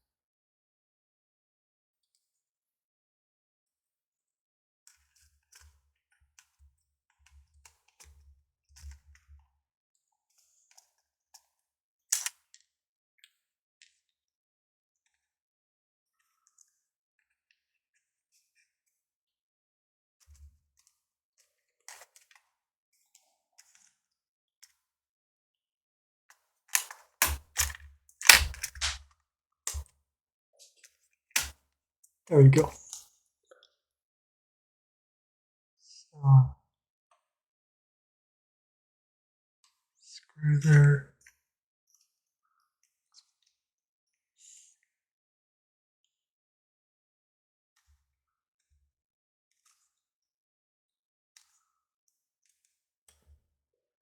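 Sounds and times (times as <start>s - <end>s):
small parts clicking: 26.8s - 29.0s.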